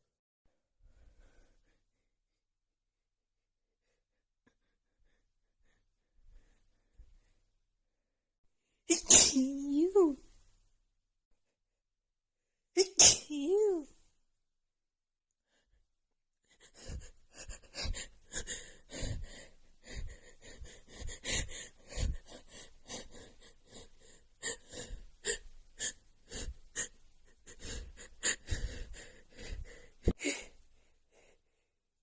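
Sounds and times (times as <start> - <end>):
woman gasping and sniffing: 16.5 - 31.4.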